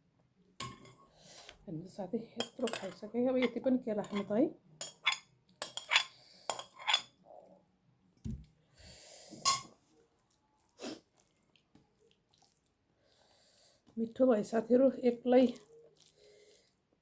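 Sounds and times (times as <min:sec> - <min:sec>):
utensils clinking on a plate: 0:00.6 - 0:01.0, 0:02.4 - 0:07.2.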